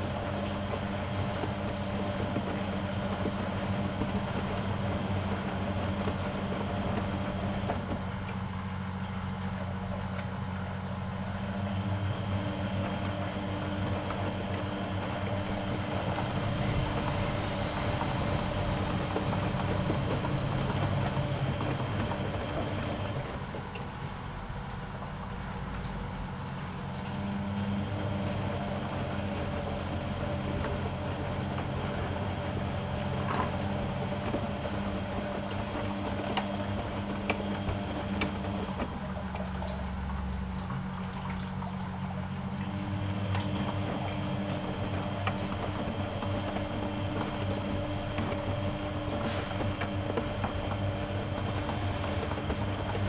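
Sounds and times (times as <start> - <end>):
washing machine motor hum: 0.0 - 53.0
water in drum: 0.0 - 53.0.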